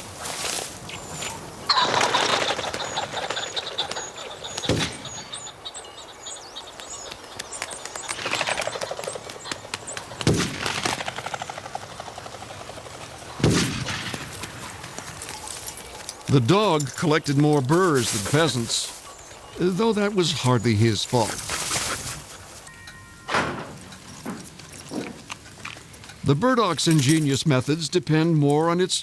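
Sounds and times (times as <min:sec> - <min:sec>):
birds chirping: 0:00.0 - 0:29.0
loud gunshots with echo: 0:10.2 - 0:11.8, 0:13.4 - 0:14.4.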